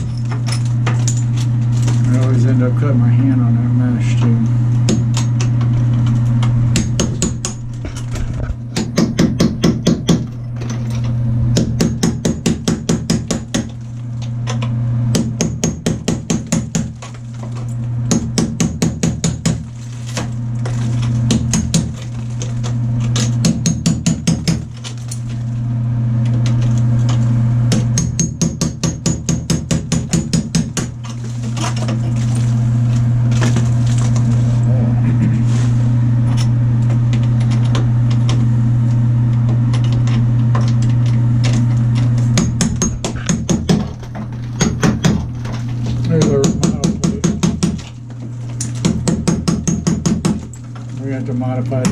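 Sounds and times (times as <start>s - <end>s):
steady low hum: 0.0s - 51.9s
hammer knocking out tile: 8.7s - 10.3s, 42.4s - 45.3s, 46.0s - 47.9s.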